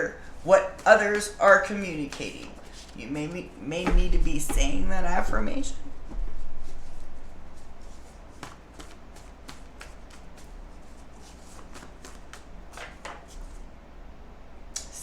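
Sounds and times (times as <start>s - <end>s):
cards being shuffled: 7.8s - 13.7s.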